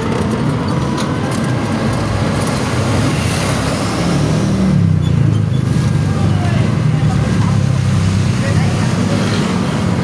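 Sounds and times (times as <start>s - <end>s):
electric golf cart rumbling: 0.0s - 4.0s.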